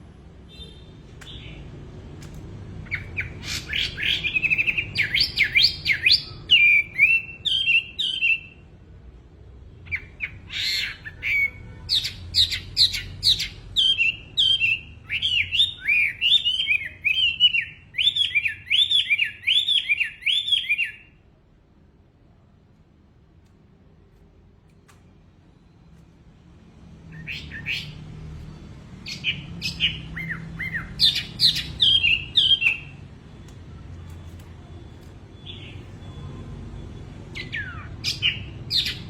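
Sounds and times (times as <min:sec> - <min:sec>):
songbird singing whistled notes: 0:02.8 - 0:08.6, 0:09.8 - 0:21.2, 0:27.1 - 0:33.5, 0:34.1 - 0:39.0.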